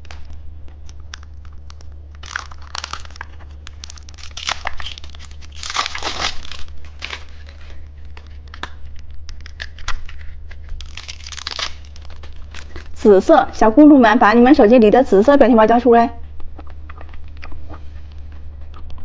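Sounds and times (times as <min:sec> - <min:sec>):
plastic wrapper crinkling: 0:00.0 - 0:13.3
steady low hum: 0:00.0 - 0:19.0.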